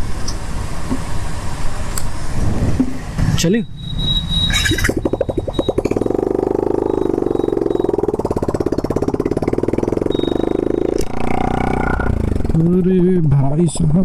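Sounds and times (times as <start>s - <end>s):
motorcycle engine running: 4.6s - 13.2s.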